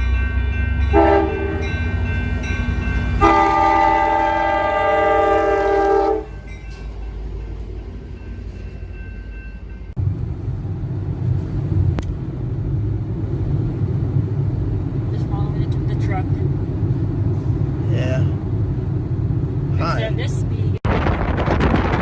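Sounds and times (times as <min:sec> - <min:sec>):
train horn blasts: 0:00.9 - 0:01.8, 0:03.0 - 0:06.4
low rumble: 0:09.9 - 0:22.0.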